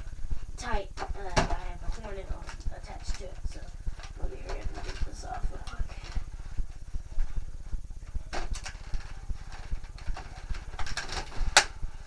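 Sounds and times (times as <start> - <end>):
rapid low throbbing: 0.0 - 12.0
sharp plastic snap: 10.8 - 11.7.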